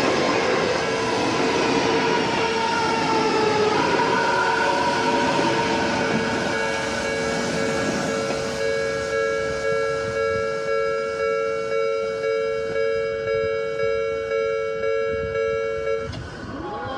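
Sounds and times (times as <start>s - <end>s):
electric train rumble: 0.0s - 16.9s
level-crossing bell ringing: 4.0s - 16.1s.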